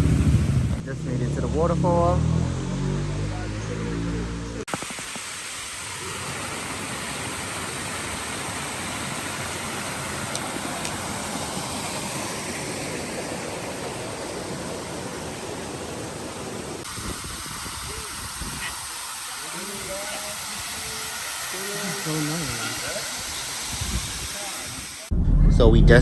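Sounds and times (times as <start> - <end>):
waterfall rushing: 4.7 - 25.1.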